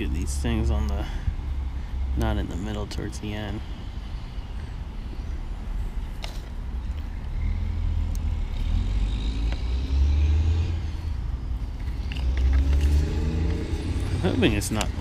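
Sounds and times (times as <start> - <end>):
motor vehicle passing: 6.8 - 15.0
tyre whine: 7.1 - 15.0.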